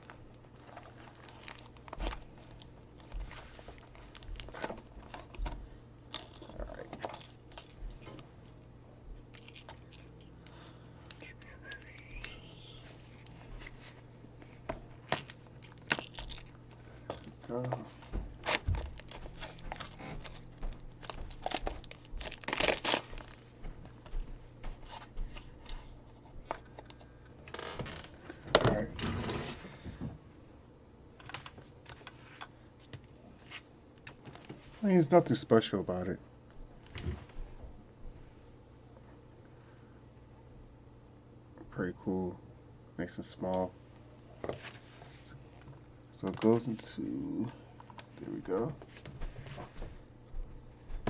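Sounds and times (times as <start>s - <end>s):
packaging crinkling: 0.0s - 5.6s, 15.1s - 17.3s, 18.0s - 23.4s.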